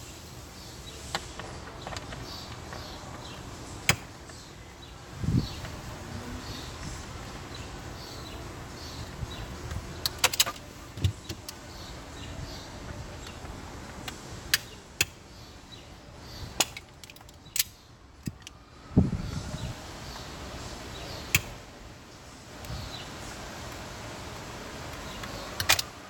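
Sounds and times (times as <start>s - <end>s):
sharp clicks and light knocks: 16.6s - 18.6s.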